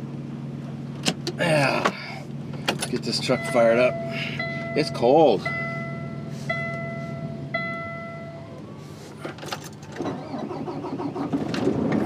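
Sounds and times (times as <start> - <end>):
diesel engine cranking and starting: 0.7 - 12.0
truck warning buzzer beeps: 3.3 - 8.4.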